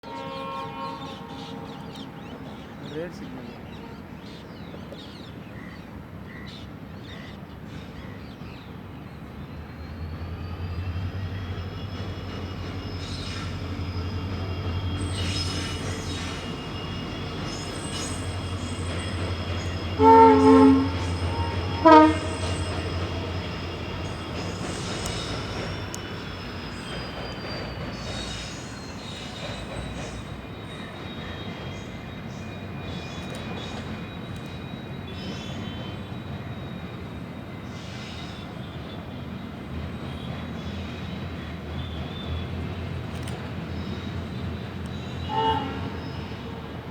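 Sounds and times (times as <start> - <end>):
locomotive horn blast: 0.0 - 2.8, 19.6 - 24.2, 45.2 - 46.6
diesel locomotive engine hum: 0.0 - 46.9.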